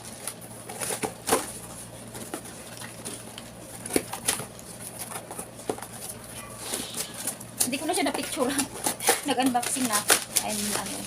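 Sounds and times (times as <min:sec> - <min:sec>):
packaging rustling: 0:00.0 - 0:11.0.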